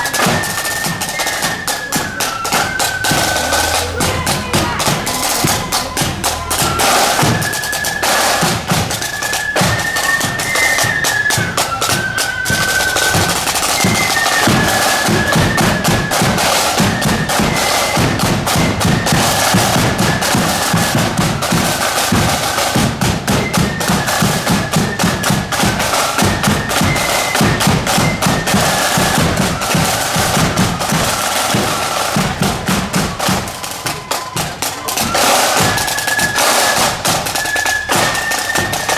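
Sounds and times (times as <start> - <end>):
high wandering melody: 0.0 - 38.9
snare drum rolls: 0.0 - 38.9
bass drum beat: 3.1 - 6.6.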